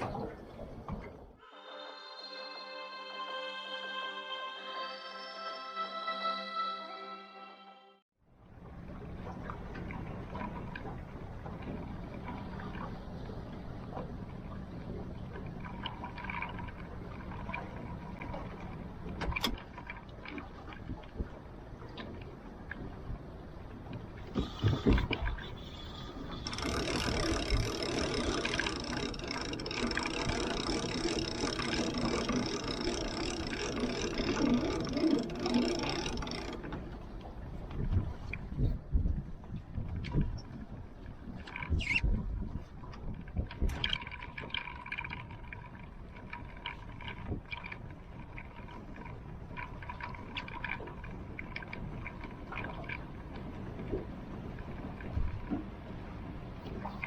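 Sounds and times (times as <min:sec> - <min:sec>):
water sloshing around boat: 0:00.0 - 0:01.4, 0:08.3 - 0:57.0
fishing reel clicking whir: 0:24.4 - 0:36.7.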